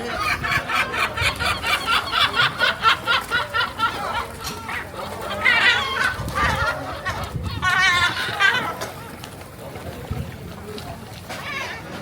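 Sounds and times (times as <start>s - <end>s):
gulls calling: 0.0s - 9.3s.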